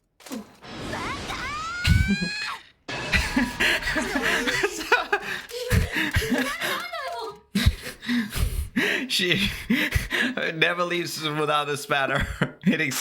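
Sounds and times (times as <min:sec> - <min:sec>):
people laughing: 0:01.9 - 0:08.2
person speaking: 0:04.1 - 0:07.8.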